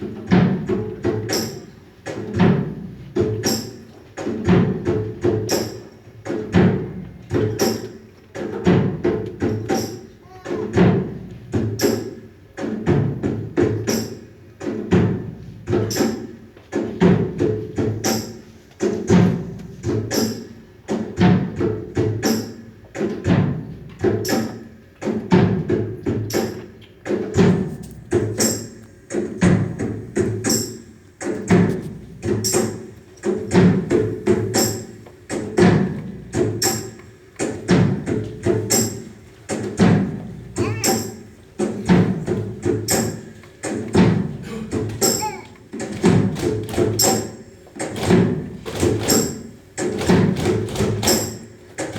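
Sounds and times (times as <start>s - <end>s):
music with wood-block beat: 0.0s - 51.9s.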